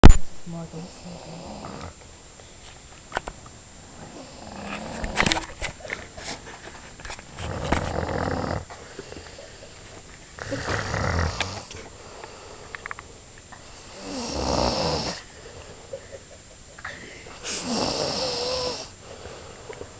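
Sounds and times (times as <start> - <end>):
person snoring: 0.8 - 2.0, 4.0 - 5.1, 7.5 - 9.7, 10.4 - 12.6, 13.7 - 15.9, 16.8 - 19.7.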